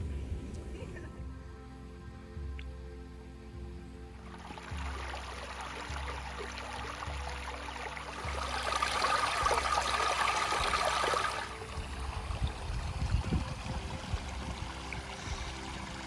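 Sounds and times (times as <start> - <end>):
low bumps: 3.6 - 16.0
stream rushing over rocks: 4.3 - 16.0.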